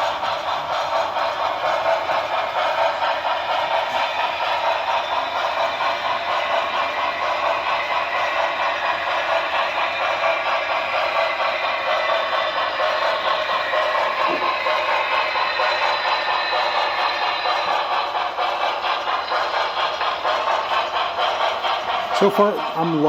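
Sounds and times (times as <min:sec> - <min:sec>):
model train clattering on track: 0:00.0 - 0:23.0
steam chuffing through small speaker: 0:00.0 - 0:23.0.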